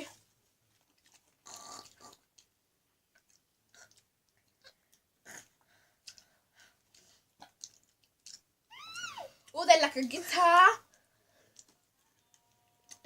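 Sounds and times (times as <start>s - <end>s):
chewing gummy candy: 0.7s - 8.5s, 10.9s - 13.0s.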